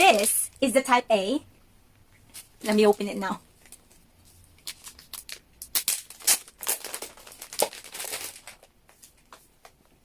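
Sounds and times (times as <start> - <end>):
plastic wrapping torn and crinkled: 4.5 - 8.7.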